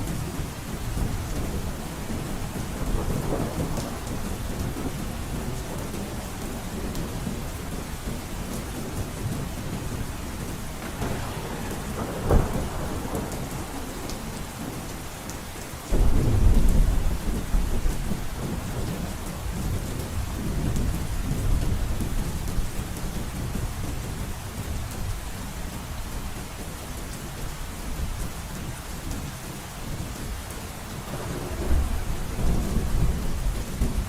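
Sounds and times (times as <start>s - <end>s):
low thunder rumble: 0.0s - 7.9s, 10.7s - 15.1s, 15.9s - 22.8s, 31.0s - 34.0s
heavy rain on a roof: 0.0s - 34.0s
thunder crack: 10.8s - 14.8s, 15.9s - 18.9s, 31.1s - 34.0s.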